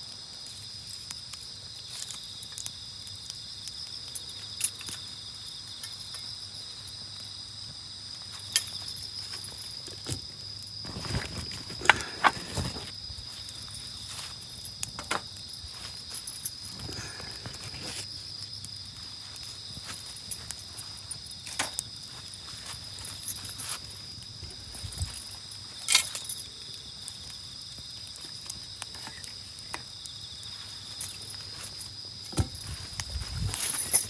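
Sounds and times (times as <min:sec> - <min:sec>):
night insects trilling: 0:00.0 - 0:34.0
campfire popping and crackling: 0:00.1 - 0:08.3, 0:09.8 - 0:23.2, 0:23.8 - 0:33.5
rustling: 0:10.8 - 0:26.5, 0:30.4 - 0:34.0.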